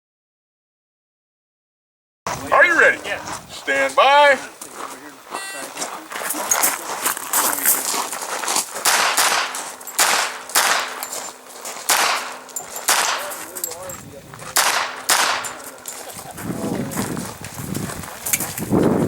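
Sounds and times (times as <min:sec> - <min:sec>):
carbine gunshots: 0:08.7 - 0:13.7, 0:14.4 - 0:16.1.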